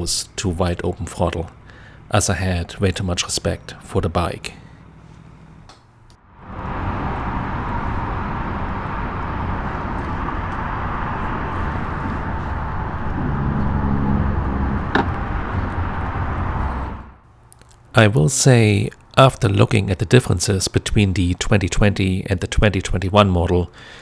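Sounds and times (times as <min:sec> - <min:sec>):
motorcycle engine: 0:06.2 - 0:17.3
wind rush on helmet: 0:06.4 - 0:17.2.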